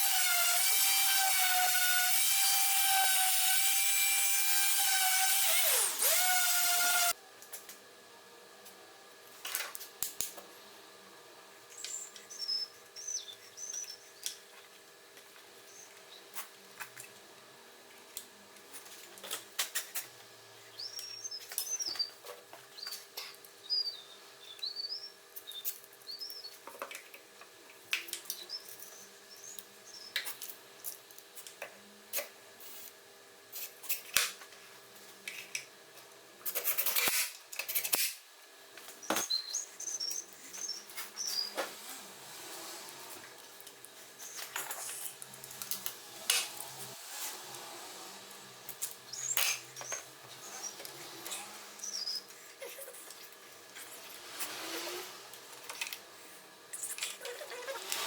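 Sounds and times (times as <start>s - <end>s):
bird chirping: 23.6s - 26.5s, 49.1s - 50.8s, 51.8s - 52.3s.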